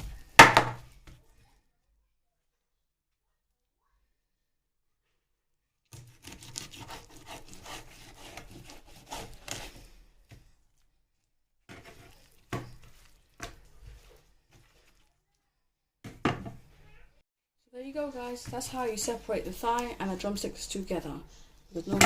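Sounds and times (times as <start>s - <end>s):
knife sawing through chicken: 6.0s - 9.9s.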